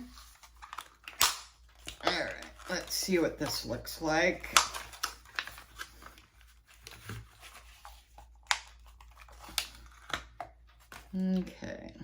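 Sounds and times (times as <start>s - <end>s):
packaging crinkling: 0.0s - 11.3s
sharp plastic clicks: 0.6s - 2.4s, 4.4s - 5.5s.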